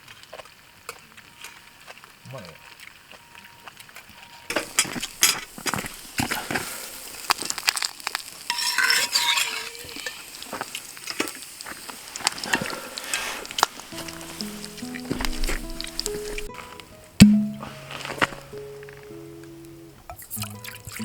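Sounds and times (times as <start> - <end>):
food frying: 0.0 - 16.8
utensil clinking against a pan: 4.5 - 7.0, 8.4 - 11.4.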